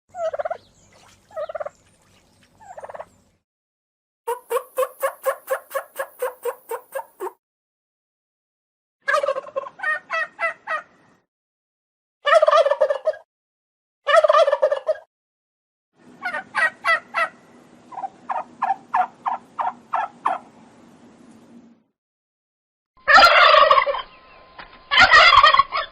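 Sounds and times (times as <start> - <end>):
turkeys gobbling: 0.2 - 0.7, 1.3 - 1.8, 2.6 - 3.2, 4.3 - 7.3, 9.1 - 10.9, 12.3 - 13.2, 14.1 - 15.1, 16.2 - 20.5, 23.0 - 24.2, 24.9 - 25.9.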